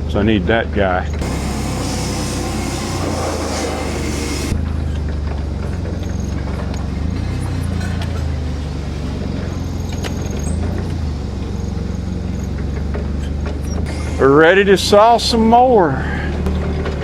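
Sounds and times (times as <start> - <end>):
forklift engine running: 1.2 - 7.4.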